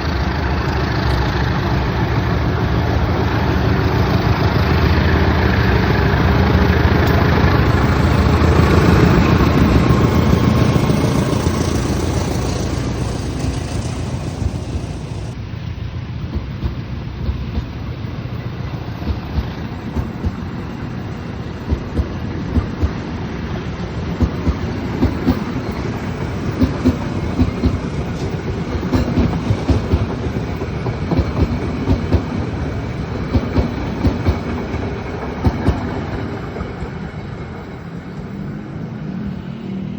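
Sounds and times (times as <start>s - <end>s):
train rumble: 0.0s - 39.9s
wheels clacking over rail joints: 16.2s - 37.9s.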